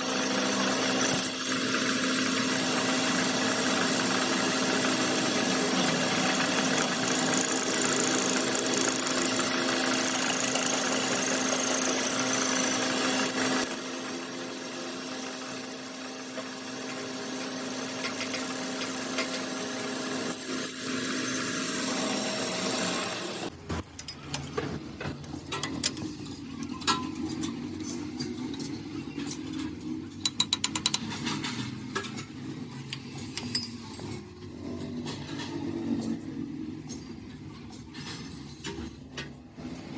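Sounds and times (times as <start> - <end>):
lathe humming and hissing: 3.4 - 13.8
metal clicking and knocking: 5.8 - 12.2, 28.6 - 32.2.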